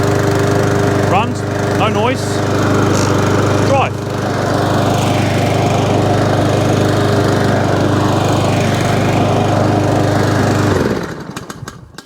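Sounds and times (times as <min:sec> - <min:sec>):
lawn mower engine running: 0:00.0 - 0:12.0.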